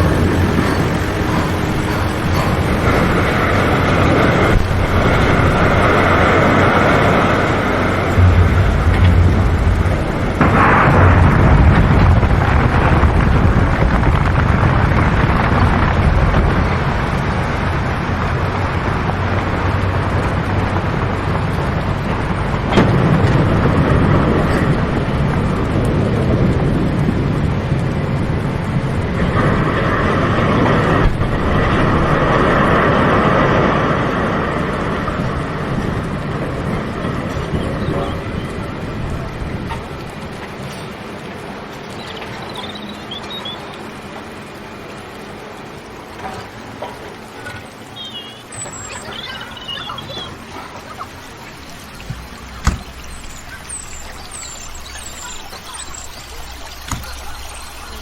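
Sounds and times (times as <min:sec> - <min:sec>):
harsh mid-pitched noise: 0:00.0 - 0:18.8
heavy machinery rumbling: 0:00.0 - 0:58.0.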